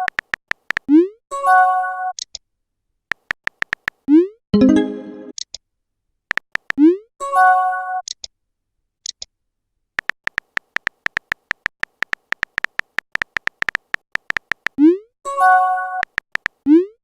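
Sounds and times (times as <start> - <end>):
phone keyboard tap clicks: 3.1 - 4.0, 10.0 - 14.8, 16.0 - 16.6.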